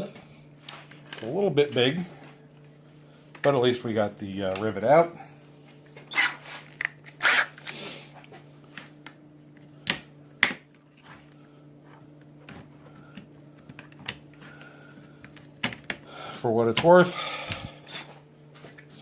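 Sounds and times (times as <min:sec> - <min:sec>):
faint steady hum: 0:00.0 - 0:19.0
scraping rustles of tools: 0:05.6 - 0:09.0.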